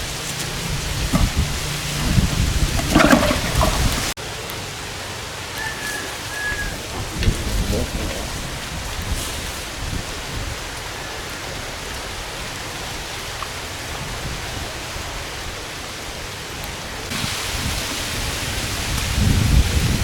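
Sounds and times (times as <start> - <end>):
low rumbling: 0.0 - 4.2, 6.6 - 11.0
rain hissing: 0.0 - 20.0.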